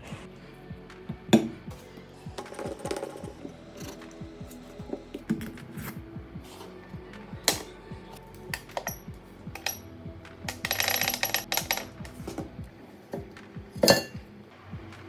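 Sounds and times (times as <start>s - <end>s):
background music: 0.0s - 15.0s
rattling clicks: 10.5s - 12.2s.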